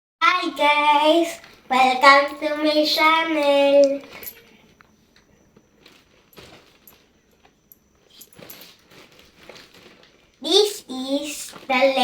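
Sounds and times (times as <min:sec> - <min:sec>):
faint rustles: 0:03.8 - 0:12.0.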